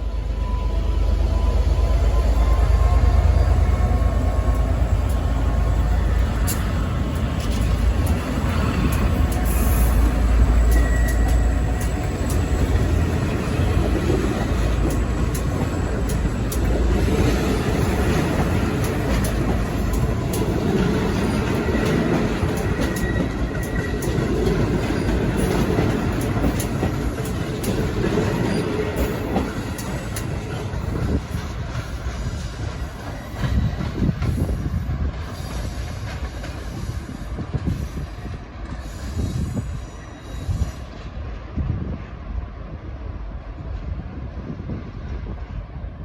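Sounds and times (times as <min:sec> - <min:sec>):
diesel locomotive engine rumble: 0:00.0 - 0:46.0
train wheels clicking on rails: 0:01.7 - 0:45.7
faint wheel squeals: 0:09.0 - 0:12.7.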